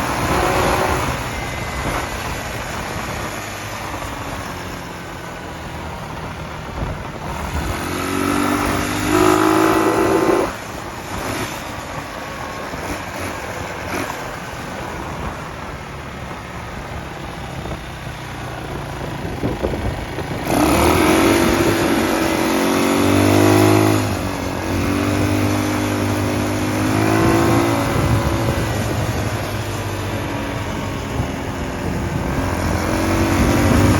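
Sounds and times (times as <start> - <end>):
quad engine revving: 0.0 - 3.4, 7.2 - 11.8, 19.0 - 33.9.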